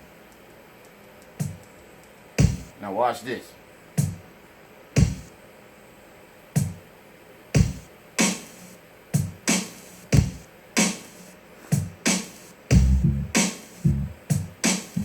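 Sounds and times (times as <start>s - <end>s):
hip-hop drum-machine beat: 1.3s - 1.7s, 2.4s - 2.8s, 4.0s - 4.3s, 5.0s - 5.4s, 6.6s - 6.9s, 7.6s - 15.0s
deep bass hit: 12.7s - 14.2s.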